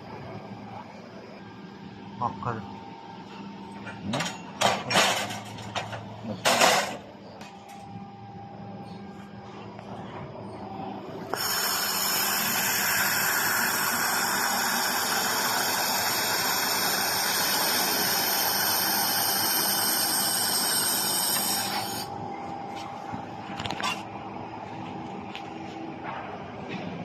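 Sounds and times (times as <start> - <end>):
laser welder hissing and whistling: 11.3 - 22.1.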